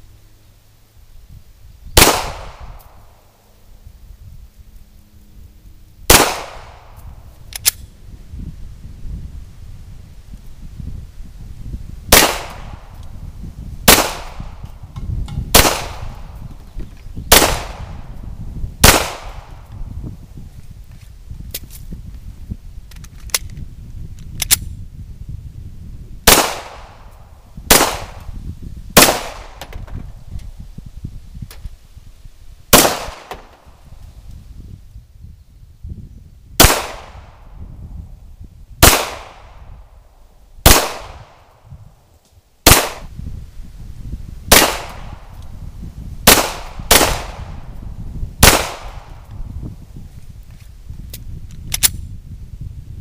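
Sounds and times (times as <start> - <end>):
pistol shots with echo: 2.0 - 2.6, 6.1 - 6.8, 12.1 - 12.8, 13.9 - 14.5, 15.5 - 16.2, 17.3 - 17.8, 18.8 - 19.4, 26.3 - 27.0, 29.0 - 29.6, 36.6 - 37.2, 38.8 - 39.5, 40.6 - 41.3, 42.7 - 43.1, 44.5 - 45.1, 46.3 - 47.5, 48.4 - 49.1.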